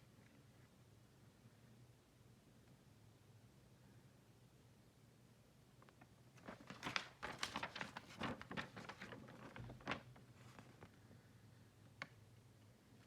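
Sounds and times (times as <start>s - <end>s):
faint steady hum: 0.0s - 13.0s
book pages rustling and clicking: 6.0s - 11.0s.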